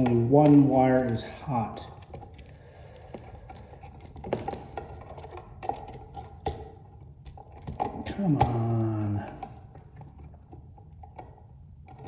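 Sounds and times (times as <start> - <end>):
clicks and taps of tools: 0.0 - 6.6.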